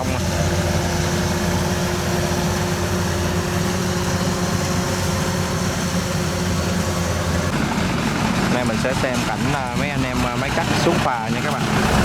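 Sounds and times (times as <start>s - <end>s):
combine harvester diesel engine drone: 0.0s - 12.0s.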